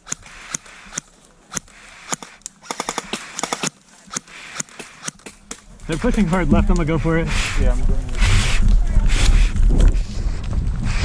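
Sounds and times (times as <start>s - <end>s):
airsoft rifle firing: 0.0s - 5.7s.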